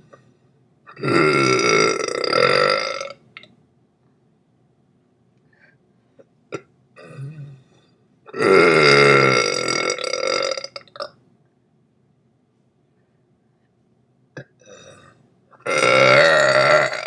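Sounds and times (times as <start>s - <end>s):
person burping: 0.9s - 3.2s, 6.5s - 7.6s, 8.3s - 11.1s, 14.4s - 17.0s.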